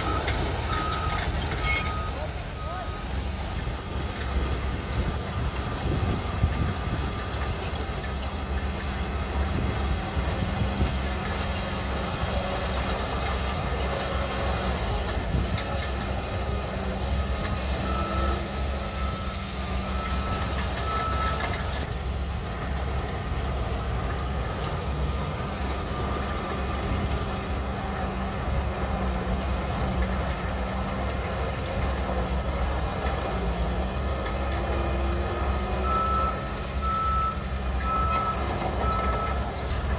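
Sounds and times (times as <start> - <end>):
reverse alarm beeping: 0.0 - 3.6
bulldozer diesel engine running: 0.0 - 39.9.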